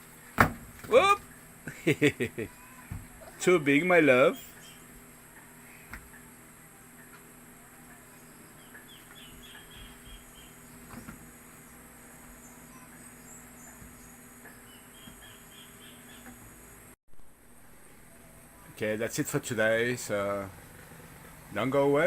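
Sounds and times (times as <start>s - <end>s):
insects droning: 0.0s - 22.0s
bird chirps: 4.3s - 4.9s, 8.1s - 10.8s, 12.4s - 16.4s.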